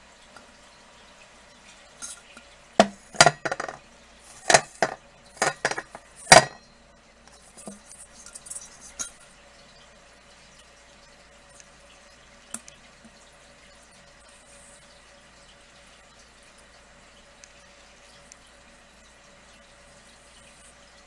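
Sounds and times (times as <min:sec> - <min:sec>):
glass clinking and knocking: 0:02.8 - 0:03.8, 0:04.4 - 0:06.6.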